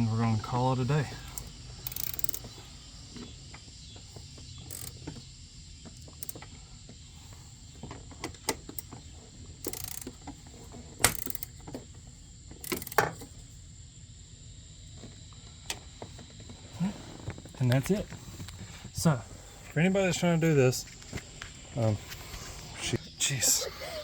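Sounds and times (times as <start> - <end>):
socket ratchet clicking: 1.2 - 2.5, 4.7 - 5.0, 6.1 - 6.4, 9.6 - 10.1, 11.0 - 11.6, 12.6 - 13.1.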